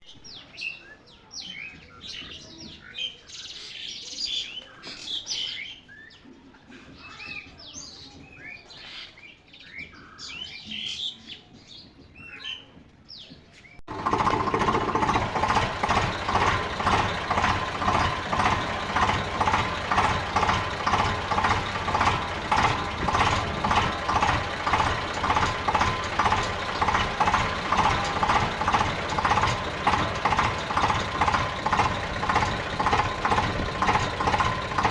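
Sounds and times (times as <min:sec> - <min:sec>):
engine running with pulsing beat: 0:13.9 - 0:34.9
birds chirping: 0:14.1 - 0:34.9.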